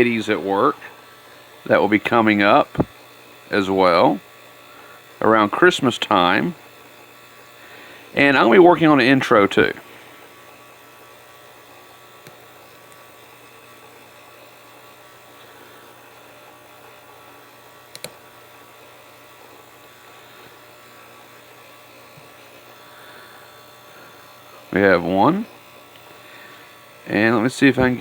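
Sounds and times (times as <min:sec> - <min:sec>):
low electrical hum with hiss: 0:00.0 - 0:28.0
small sharp clicks: 0:12.2 - 0:13.6, 0:17.9 - 0:18.2.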